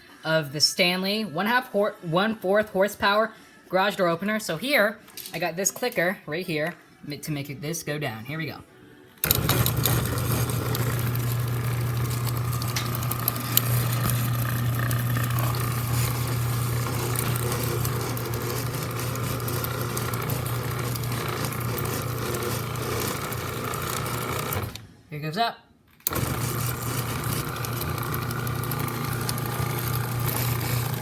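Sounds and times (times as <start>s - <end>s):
garage door opener motor hum: 9.2s - 25.0s, 26.0s - 31.0s.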